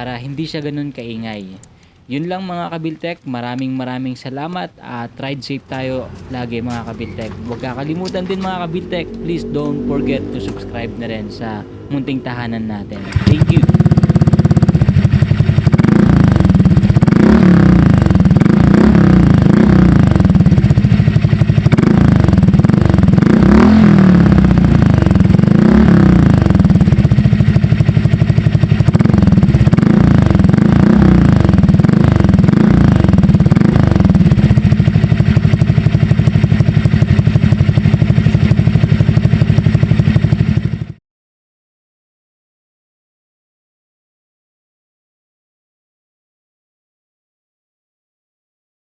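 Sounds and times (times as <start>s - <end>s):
scooter engine revving: 5.7s - 41.0s.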